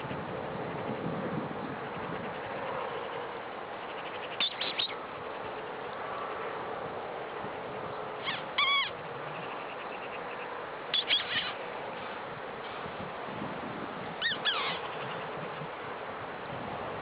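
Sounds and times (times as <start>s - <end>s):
steady background hiss: 0.0s - 17.0s
imitation mouse squeaks: 11.0s - 11.6s.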